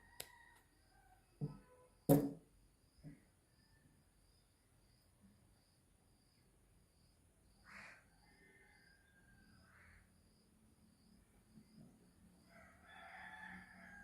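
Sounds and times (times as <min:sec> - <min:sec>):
faint insect chirping: 0:00.0 - 0:14.0.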